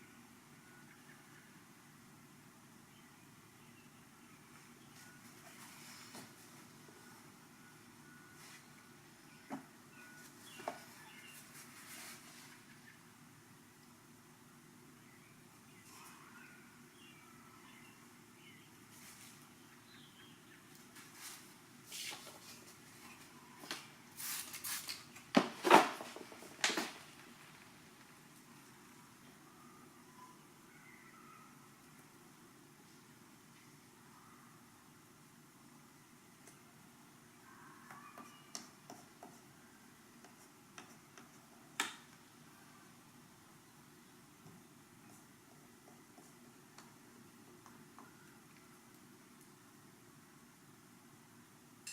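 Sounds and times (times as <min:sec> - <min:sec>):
faint clicks and taps: 0:37.9 - 0:39.4, 0:40.2 - 0:42.2.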